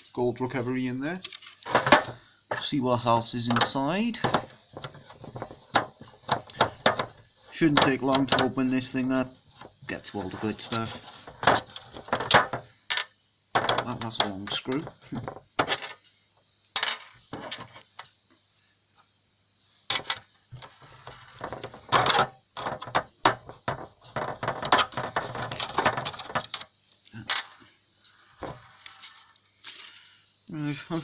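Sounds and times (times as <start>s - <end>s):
plastic case and screws rattling: 3.4s - 8.6s, 9.6s - 16.0s, 19.9s - 26.7s.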